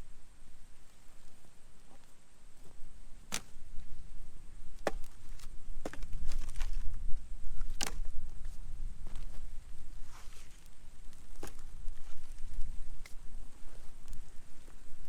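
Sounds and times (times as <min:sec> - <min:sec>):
campfire burning with low rumble: 0:00.0 - 0:15.0
wood cracking and popping: 0:07.6 - 0:08.2.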